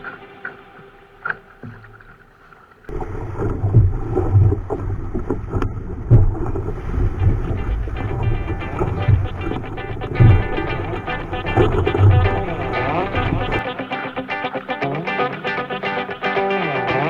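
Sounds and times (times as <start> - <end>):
water rushing along hull: 0.0 - 14.8
water splashes: 0.0 - 15.2
wind buffeting microphone: 2.9 - 13.6
knocks on boat: 5.5 - 13.6.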